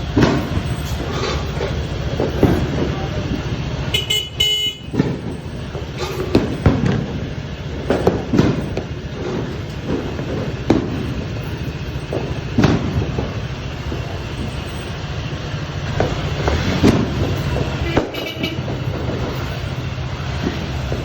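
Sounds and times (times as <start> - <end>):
train rolling on rails: 0.0 - 21.0
clanks and knocks: 0.1 - 3.8, 4.8 - 15.2.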